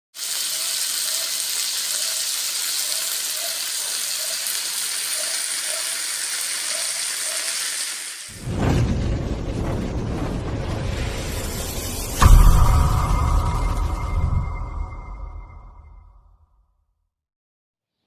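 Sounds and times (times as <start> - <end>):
food frying in hot oil: 0.1 - 8.4
loud deep sound: 8.4 - 16.3.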